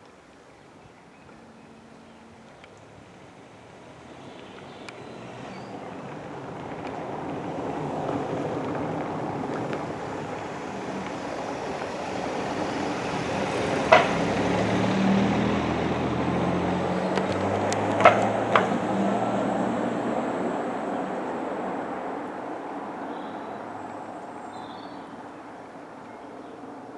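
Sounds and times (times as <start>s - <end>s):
low engine hum: 0.9s - 24.5s
vehicle passing rushing noise: 5.1s - 24.5s.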